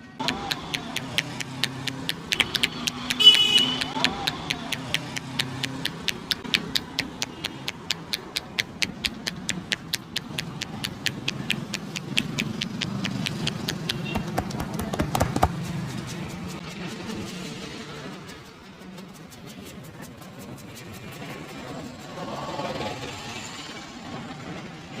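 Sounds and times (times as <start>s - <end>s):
low street hum: 0.0s - 25.0s
hands tapping on head: 0.2s - 16.6s.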